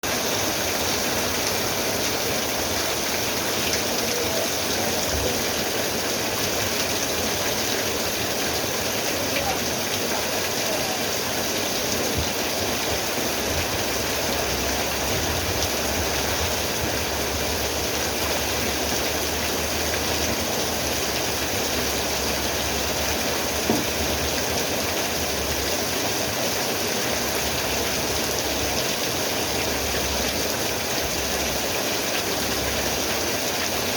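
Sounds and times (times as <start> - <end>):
steady rain falling: 0.0 - 33.9.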